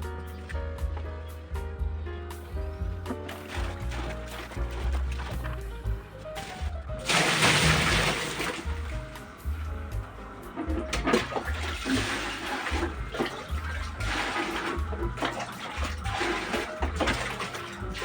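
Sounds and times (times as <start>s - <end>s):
background music with low beat: 0.0s - 18.0s
rushing splashing water: 3.1s - 9.7s, 10.4s - 18.0s.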